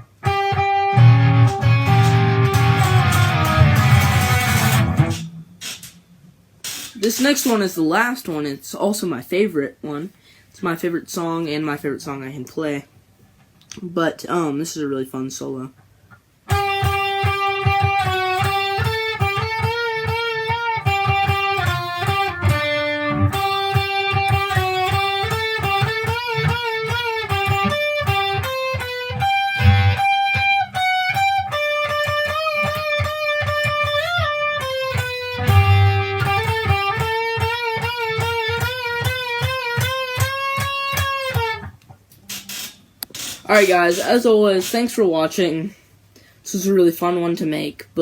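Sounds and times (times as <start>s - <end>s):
electric guitar solo: 0.0s - 5.8s, 16.5s - 41.8s.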